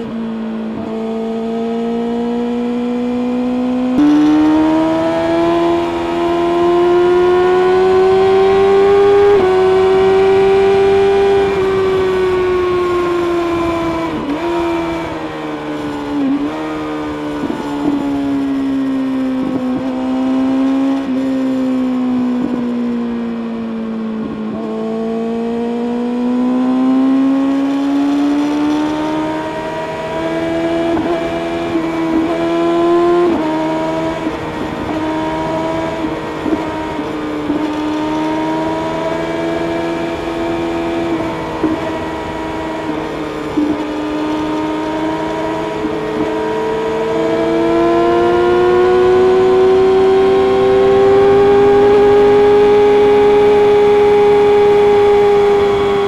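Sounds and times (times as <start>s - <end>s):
motorcycle engine running: 33.1s - 56.0s.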